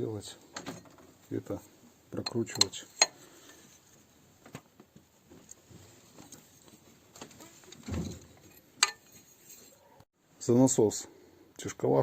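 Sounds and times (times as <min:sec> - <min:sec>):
wrench clicks and metal scrapes: 0:08.4 - 0:09.8.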